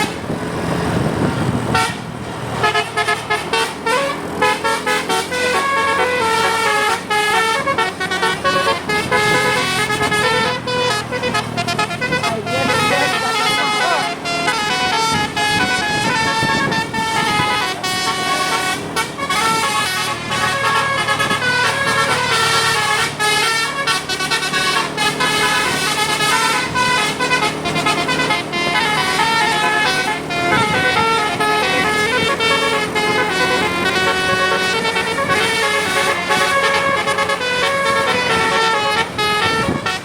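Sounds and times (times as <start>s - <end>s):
musical air horns playing: 0.0s - 40.0s.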